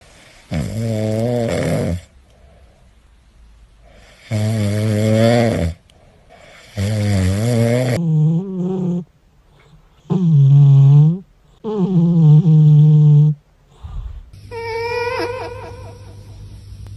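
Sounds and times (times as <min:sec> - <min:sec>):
cat snoring: 0:00.0 - 0:02.1, 0:03.8 - 0:09.0, 0:10.0 - 0:15.0.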